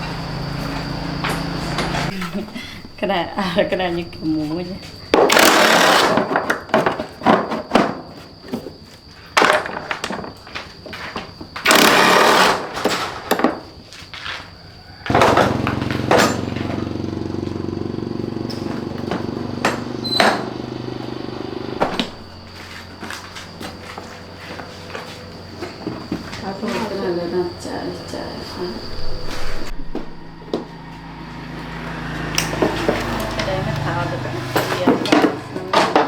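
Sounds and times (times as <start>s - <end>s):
small motor running: 0.0s - 2.3s, 5.3s - 6.2s, 11.6s - 12.8s, 15.1s - 36.0s
short noisy bursts: 5.3s - 6.4s, 11.6s - 12.8s.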